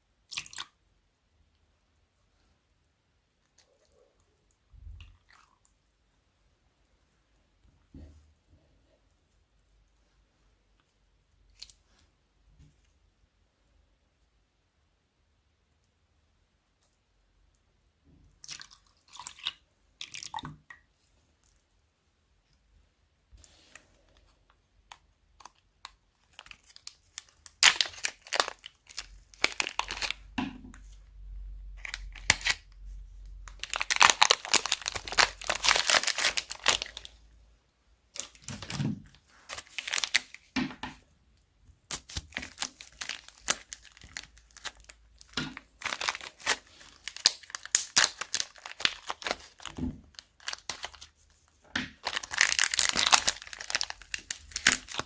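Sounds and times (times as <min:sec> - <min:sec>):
plastic bags crinkling: 0:26.2 - 0:30.2, 0:33.5 - 0:37.2, 0:38.2 - 0:40.5, 0:41.9 - 0:51.1, 0:52.0 - 0:55.0.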